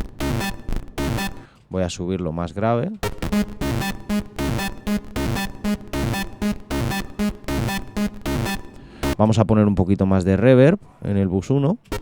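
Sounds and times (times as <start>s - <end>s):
distorted kick drum: 0.0s - 1.4s, 3.0s - 9.2s
low synth stabs: 0.0s - 1.4s, 3.0s - 9.3s.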